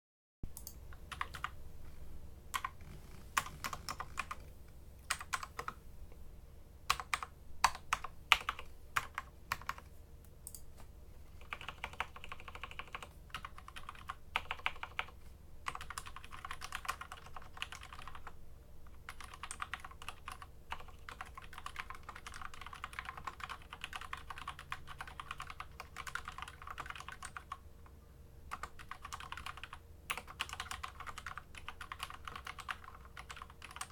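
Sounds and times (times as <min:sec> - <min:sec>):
mechanical keyboard typing: 0:00.6 - 0:01.6, 0:02.6 - 0:04.5, 0:05.1 - 0:05.8, 0:06.9 - 0:09.9, 0:11.4 - 0:18.4, 0:19.0 - 0:27.6, 0:28.5 - 0:33.9.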